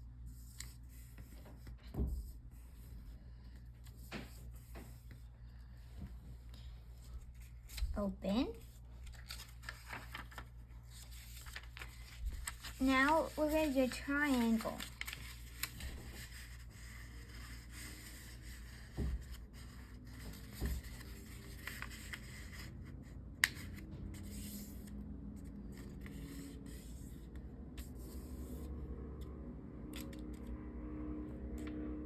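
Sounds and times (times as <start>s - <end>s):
paper rubbing and scraping: 9.0s - 22.8s.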